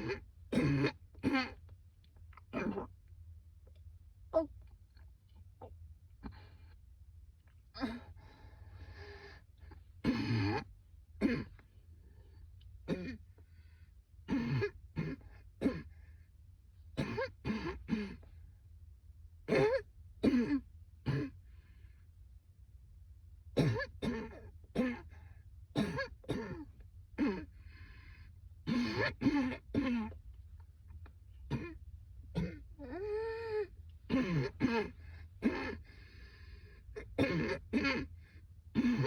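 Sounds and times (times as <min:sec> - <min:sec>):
woman coughing: 0:00.0 - 0:01.6, 0:07.8 - 0:08.2, 0:10.1 - 0:11.6, 0:12.9 - 0:13.2, 0:14.3 - 0:15.9, 0:17.0 - 0:18.2, 0:19.5 - 0:21.4, 0:23.6 - 0:25.1, 0:25.8 - 0:27.5, 0:28.7 - 0:30.2, 0:32.4 - 0:33.1, 0:34.1 - 0:35.8, 0:37.0 - 0:38.1, 0:38.8 - 0:39.0.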